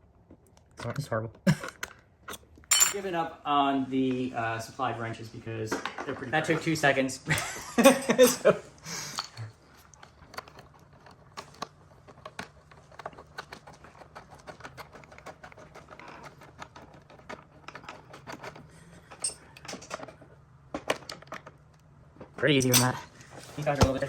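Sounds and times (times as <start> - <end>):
metal parts and tools rattling: 2.7 - 3.2, 10.0 - 21.6, 22.4 - 24.0.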